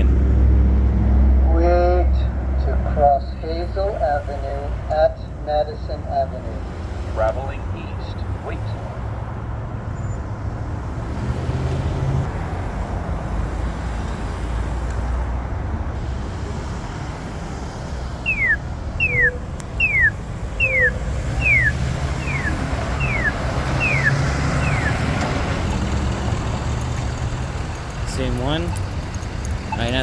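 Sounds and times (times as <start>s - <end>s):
road traffic: 0.0s - 30.0s
pedestrian signal electronic chirps: 18.1s - 30.0s.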